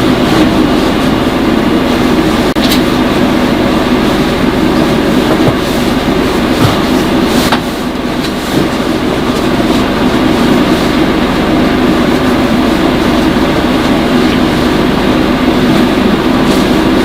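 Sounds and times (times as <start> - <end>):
moving vehicle rumble: 0.0 - 17.0.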